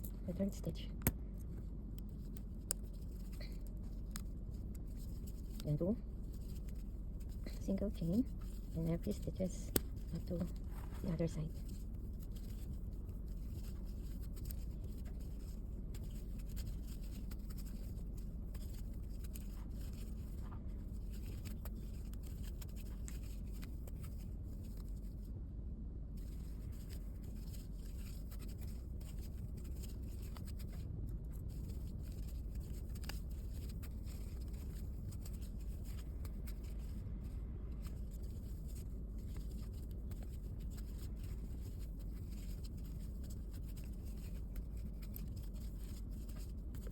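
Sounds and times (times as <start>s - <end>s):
low background hum: 0.0s - 46.9s
crochet hook scraping yarn: 1.9s - 25.1s.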